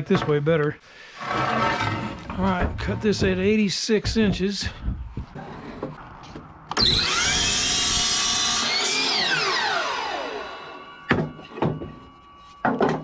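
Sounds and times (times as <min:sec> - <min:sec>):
power saw cutting wood: 0:01.1 - 0:03.3, 0:05.3 - 0:12.0
short knocks: 0:01.6 - 0:08.1.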